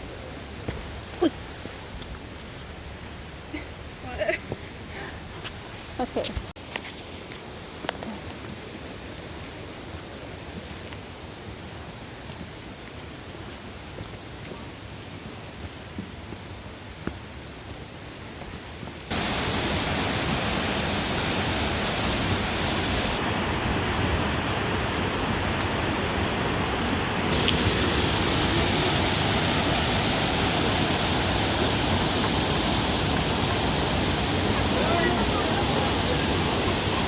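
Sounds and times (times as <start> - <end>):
waterfall pouring: 19.1 - 37.0.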